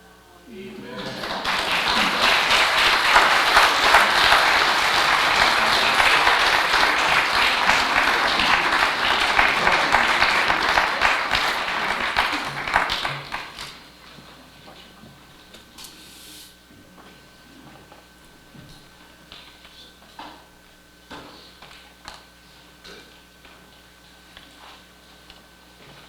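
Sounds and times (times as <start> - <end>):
audience applauding: 0.8 - 13.9.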